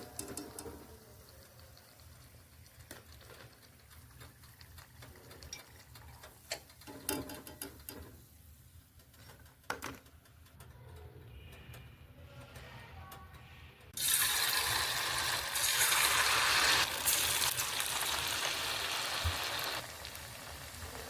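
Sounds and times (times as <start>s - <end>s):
kitchen handling clicks and knocks: 6.4s - 8.2s.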